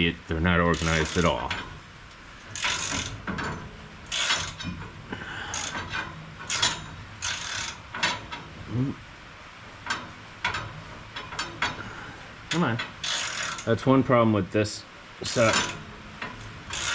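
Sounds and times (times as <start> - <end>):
ratchet wrench clicking: 0.8 - 1.6, 2.5 - 4.7, 5.5 - 8.4, 12.5 - 13.7, 15.3 - 16.9.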